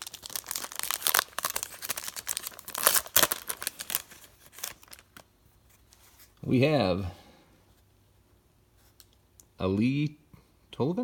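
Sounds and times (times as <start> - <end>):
plastic wrapper crinkling and tearing: 0.0 - 5.3.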